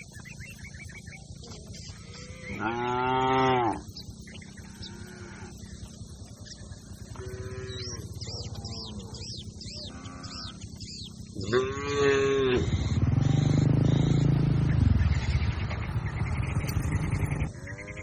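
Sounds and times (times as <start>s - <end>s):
cow mooing: 1.9s - 3.9s, 4.6s - 5.7s, 7.0s - 8.2s, 9.8s - 10.7s, 11.4s - 14.3s.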